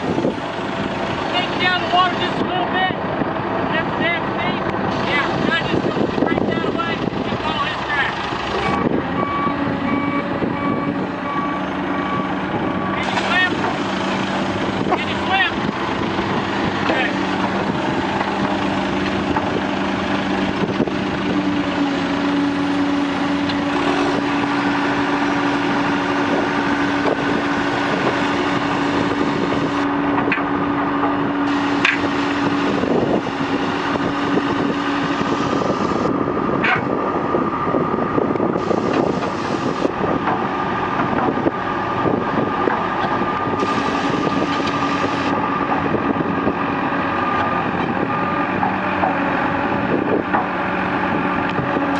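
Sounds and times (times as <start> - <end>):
diesel engine drone: 0.0 - 51.9.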